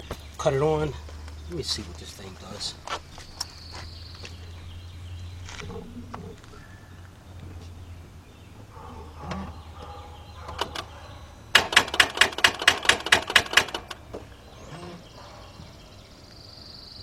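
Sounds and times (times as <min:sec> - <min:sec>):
starter solenoid clicking rapidly: 0:10.6 - 0:10.9, 0:11.5 - 0:14.2.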